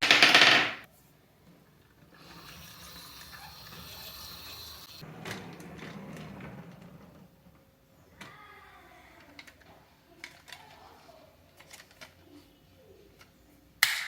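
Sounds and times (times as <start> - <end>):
marbles rolling on wood: 0.0 - 0.8.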